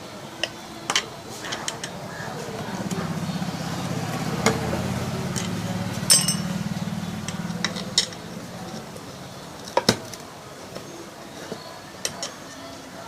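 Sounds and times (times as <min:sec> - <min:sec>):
steady low hum: 0:01.1 - 0:09.7
metal tools clinking: 0:05.3 - 0:06.6.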